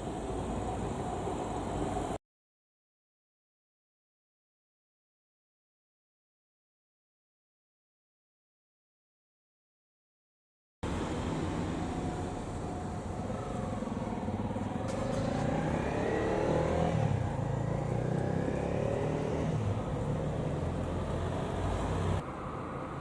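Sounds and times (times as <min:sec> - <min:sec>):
vehicle engine accelerating: 0:10.8 - 0:23.0.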